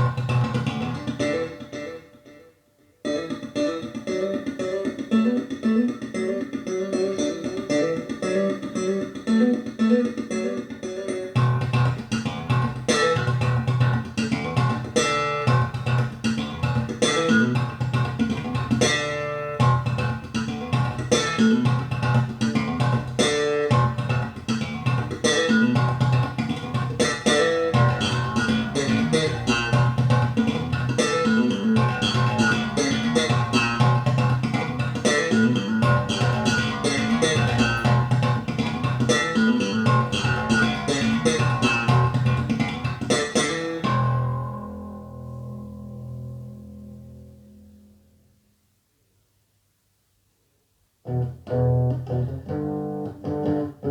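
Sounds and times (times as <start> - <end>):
deep bass guitar line: 0.0 - 1.6, 11.4 - 48.1, 51.1 - 53.9
picked acoustic guitar: 0.0 - 45.9.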